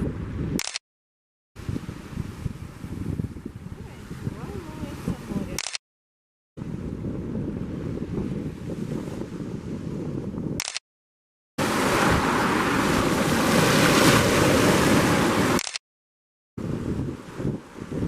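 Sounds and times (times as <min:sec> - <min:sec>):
sea surf rushing: 0:11.6 - 0:15.6.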